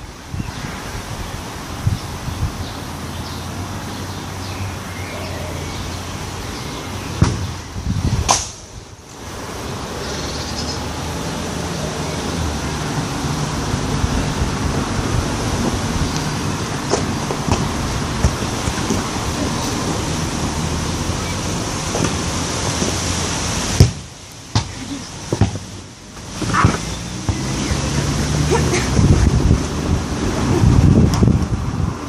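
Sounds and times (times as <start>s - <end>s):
wind buffeting microphone: 0.0s - 10.0s, 10.8s - 23.8s, 25.1s - 32.0s
sharp knocks: 7.2s - 7.5s.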